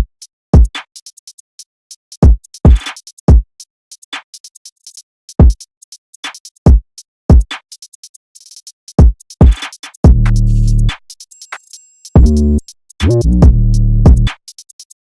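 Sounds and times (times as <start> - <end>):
crisp hi-hat ticks: 0.0 - 15.0
deep kick drums: 10.0 - 11.0, 12.2 - 12.4, 13.1 - 14.3.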